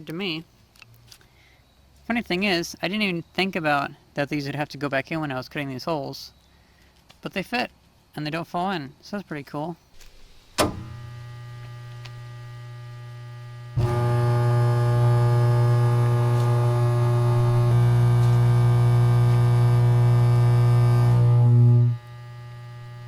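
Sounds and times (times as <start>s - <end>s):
electric arc buzzing: 10.0s - 23.0s
low hum: 10.0s - 23.0s.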